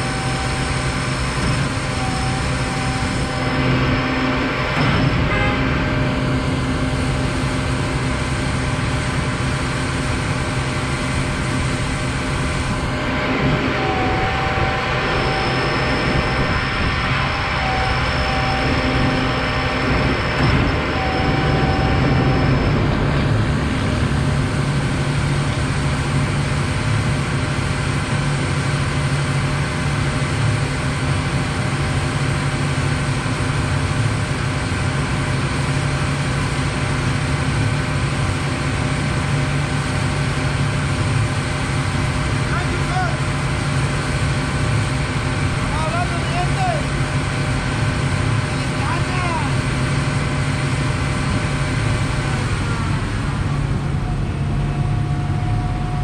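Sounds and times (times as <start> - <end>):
pump truck engine drone: 0.0 - 56.0
thin high whine: 0.0 - 56.0.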